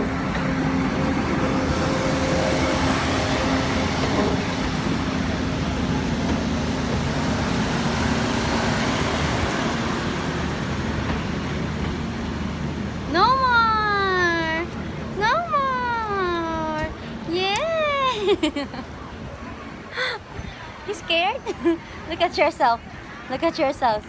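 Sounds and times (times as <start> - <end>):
train rumbling: 0.0 - 19.5.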